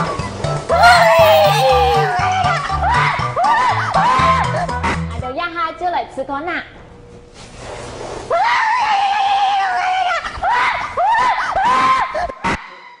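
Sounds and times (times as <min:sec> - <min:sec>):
long high-pitched scream: 0:00.7 - 0:02.2
short rising and falling shrieks: 0:00.8 - 0:02.2.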